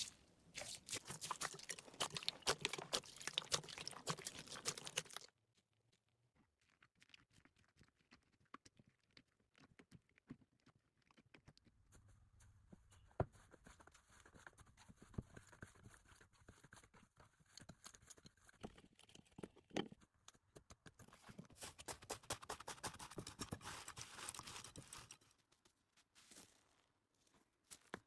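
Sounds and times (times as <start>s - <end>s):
slime squished by hand: 0.0s - 5.3s.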